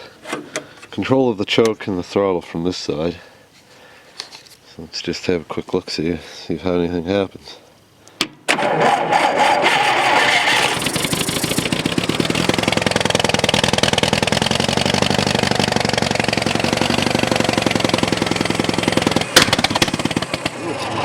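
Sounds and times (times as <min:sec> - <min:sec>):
tractor engine starting and running: 0:08.5 - 0:21.0.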